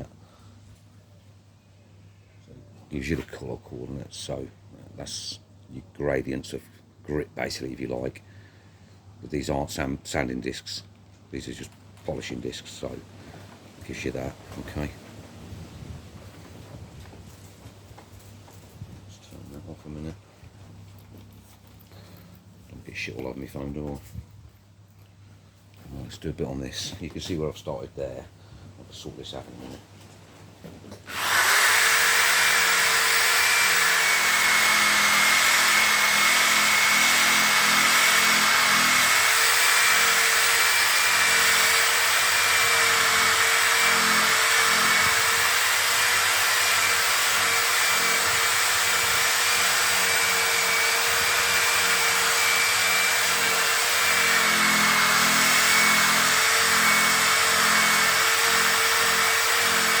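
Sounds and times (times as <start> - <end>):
power polisher whining: 31.1 - 60.0.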